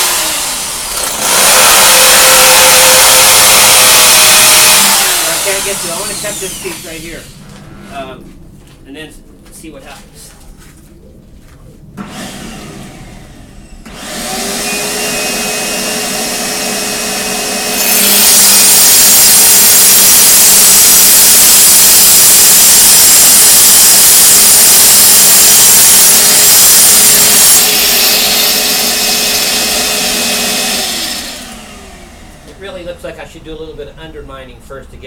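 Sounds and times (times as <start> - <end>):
cutter grinding concrete: 0.0 - 7.4, 12.0 - 32.6
masonry cutter running: 0.0 - 7.9, 12.0 - 32.8.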